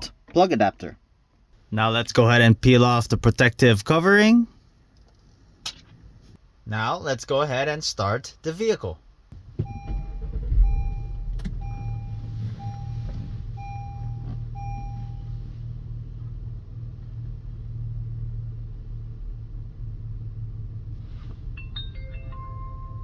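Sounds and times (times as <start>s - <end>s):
car engine starting and idling: 9.1s - 23.0s
chime beeping: 21.6s - 23.0s.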